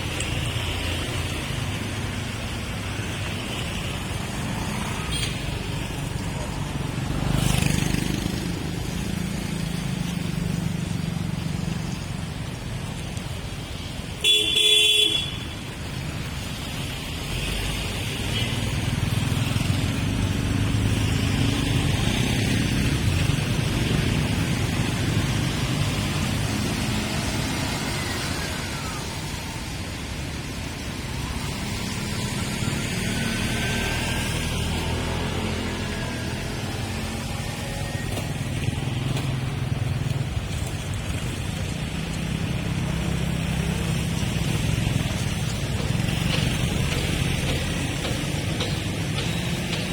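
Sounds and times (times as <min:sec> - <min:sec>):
road traffic passing: 0:00.0 - 0:49.9
vehicle horn honking: 0:14.2 - 0:15.5.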